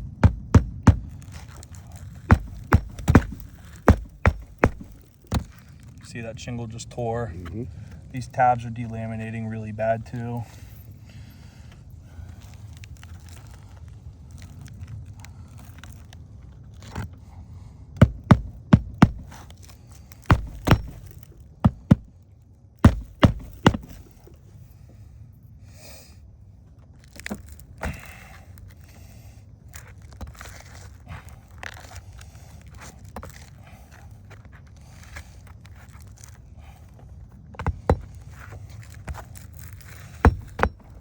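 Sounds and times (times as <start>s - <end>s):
hammer striking roofing nails: 0.0s - 1.3s, 2.3s - 5.6s, 18.0s - 19.4s, 20.2s - 22.1s, 22.8s - 24.1s, 37.6s - 38.2s, 40.3s - 41.0s
scraping on shingles: 0.0s - 6.1s, 18.0s - 22.2s, 22.8s - 24.3s, 29.7s - 41.0s.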